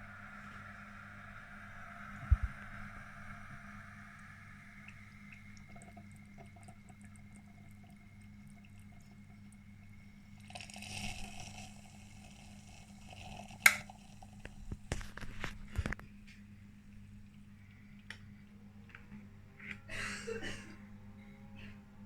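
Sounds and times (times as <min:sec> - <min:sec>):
hissing: 0:00.0 - 0:06.3
water gurgling and dripping: 0:00.0 - 0:16.0
coffee maker humming: 0:00.0 - 0:19.3.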